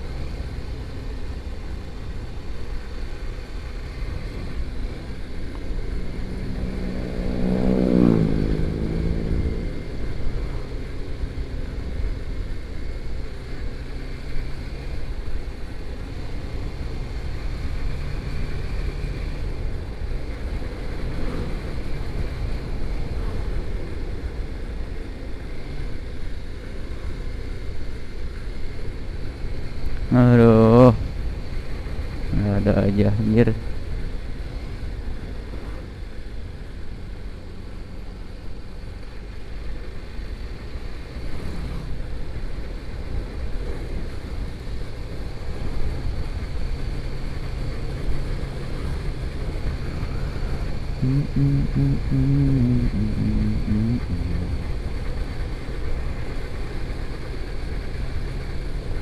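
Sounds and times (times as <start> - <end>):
motorcycle engine: 3.4 - 11.7, 49.4 - 55.3.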